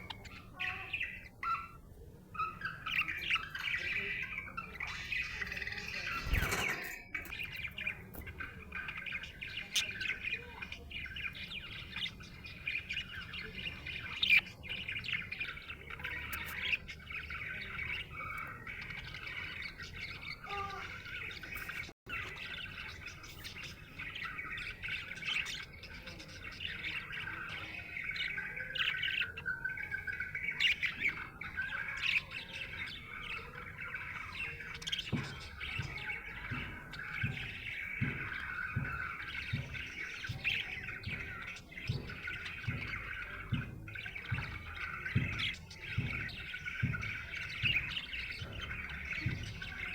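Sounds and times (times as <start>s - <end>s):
budgerigar chirping and chattering: 0.0s - 49.9s.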